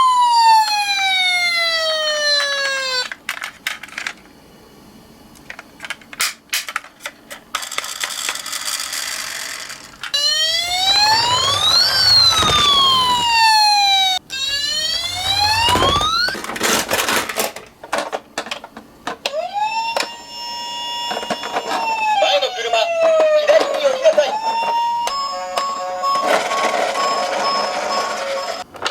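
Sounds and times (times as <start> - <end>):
toy electronic siren wailing: 10.2 - 16.5, 19.4 - 28.6
steady siren tone: 10.2 - 16.6.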